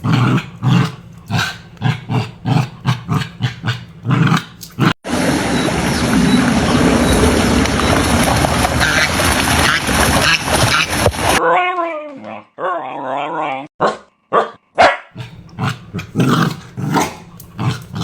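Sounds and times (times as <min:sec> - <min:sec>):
rushing background noise: 0:05.1 - 0:11.4
dog barking rapidly: 0:13.8 - 0:18.0.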